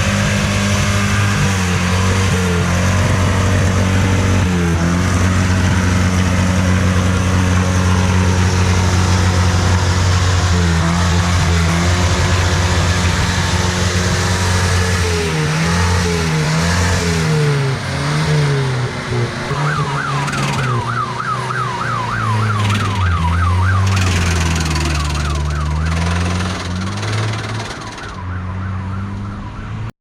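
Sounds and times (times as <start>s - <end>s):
pickup engine revving: 0.0s - 29.0s
warbling electronic siren: 19.1s - 29.9s.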